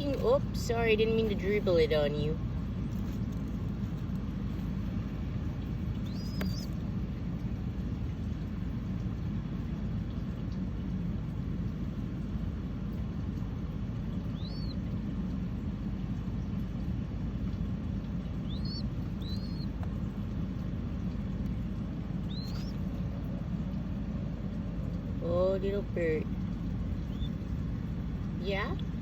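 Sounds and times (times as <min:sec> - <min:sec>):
baby dove chirping: 0:00.0 - 0:02.4, 0:05.5 - 0:06.9, 0:14.0 - 0:15.0, 0:18.2 - 0:20.4, 0:21.0 - 0:23.2, 0:26.8 - 0:27.6
low rumble: 0:00.0 - 0:29.0.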